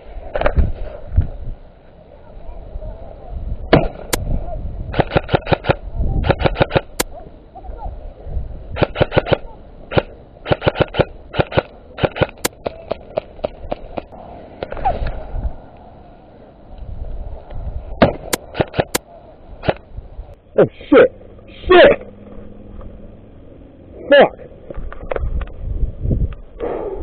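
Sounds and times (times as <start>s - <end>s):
airsoft guns firing bursts: 4.9s - 7.1s, 8.8s - 14.1s, 18.0s - 19.0s.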